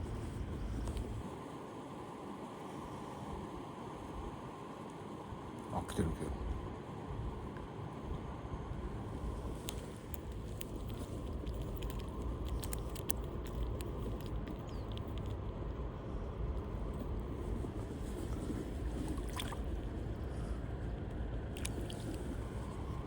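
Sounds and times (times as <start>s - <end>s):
faint clicks: 9.6s - 15.6s.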